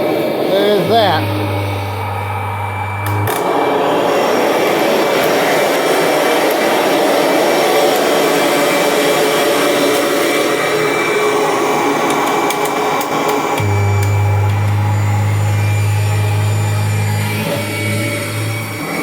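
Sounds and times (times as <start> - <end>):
upright vacuum cleaner running: 0.0 - 19.0
steady low hum: 0.4 - 3.4, 13.6 - 18.5.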